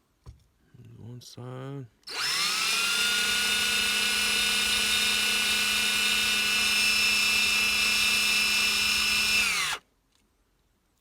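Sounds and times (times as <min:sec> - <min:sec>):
small electric drill running: 0:02.1 - 0:09.8.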